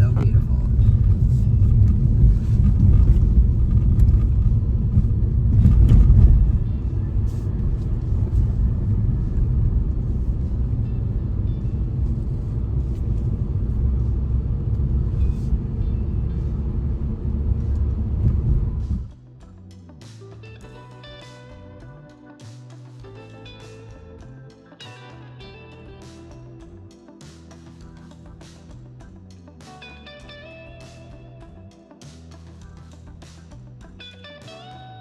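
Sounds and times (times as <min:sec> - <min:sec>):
car interior road and engine rumble: 0:00.0 - 0:19.2.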